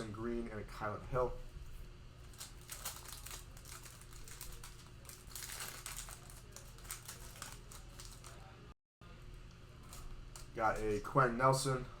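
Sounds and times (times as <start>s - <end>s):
faint steady hum: 0.0s - 12.0s
card pack wrapper crinkling: 2.2s - 8.4s.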